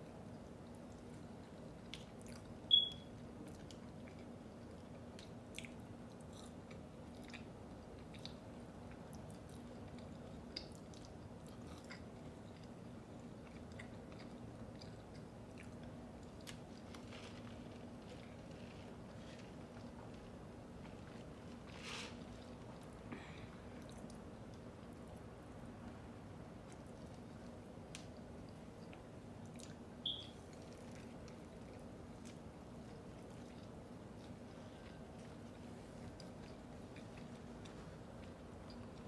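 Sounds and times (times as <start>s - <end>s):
chewing with wet clicks and crunches: 0.0s - 39.0s
faint steady hum: 0.0s - 39.0s
high-pitched chirp: 30.1s - 30.4s.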